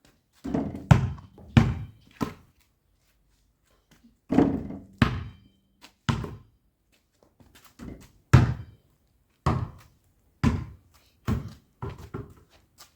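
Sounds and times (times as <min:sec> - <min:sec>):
ball bouncing on hard surface: 0:00.8 - 0:02.0, 0:05.0 - 0:05.4.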